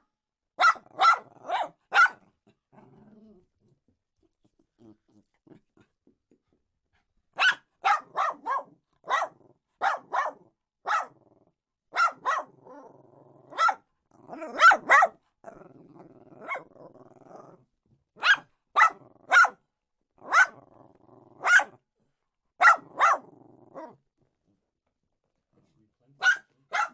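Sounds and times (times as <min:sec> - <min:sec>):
dog barking: 0:00.6 - 0:02.2, 0:07.4 - 0:11.2, 0:11.9 - 0:12.8, 0:13.5 - 0:13.8, 0:14.4 - 0:15.2, 0:16.4 - 0:16.7, 0:18.2 - 0:19.6, 0:20.2 - 0:20.6, 0:21.4 - 0:21.8, 0:22.6 - 0:24.0, 0:26.2 - 0:26.9
dog growling: 0:02.2 - 0:06.2, 0:11.1 - 0:11.6, 0:12.4 - 0:18.0, 0:18.9 - 0:19.4, 0:20.2 - 0:21.5, 0:22.8 - 0:24.0.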